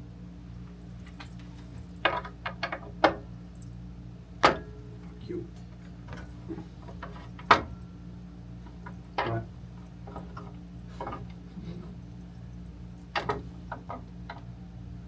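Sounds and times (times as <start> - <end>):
low steady hum: 0.0 - 15.0
clicks and knocks of hand tools: 8.7 - 9.5.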